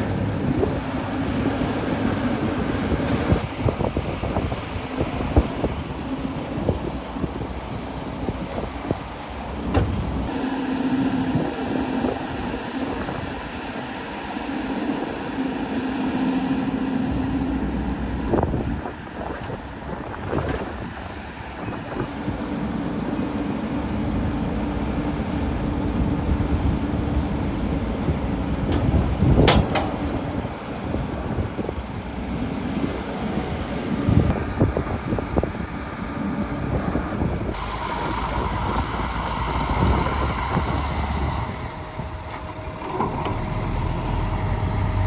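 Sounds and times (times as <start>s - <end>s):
excavator diesel engine running: 0.0s - 45.0s.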